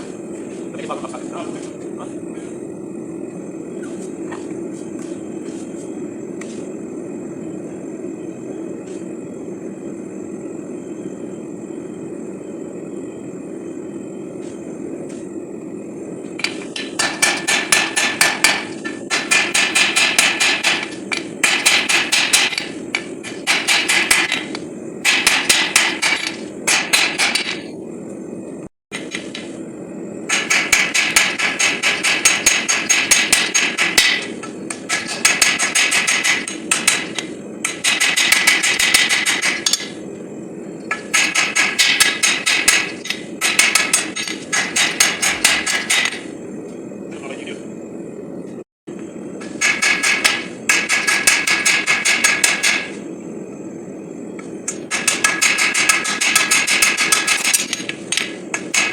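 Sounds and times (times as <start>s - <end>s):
hammer striking steel: 16.4s - 27.6s, 30.3s - 40.0s, 40.9s - 46.3s, 49.4s - 53.0s, 54.7s - 58.9s.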